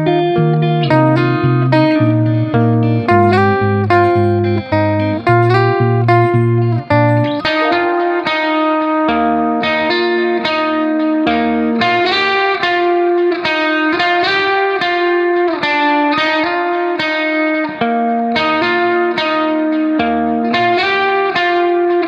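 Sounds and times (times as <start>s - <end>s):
guitar playing chords: 0.0s - 22.0s.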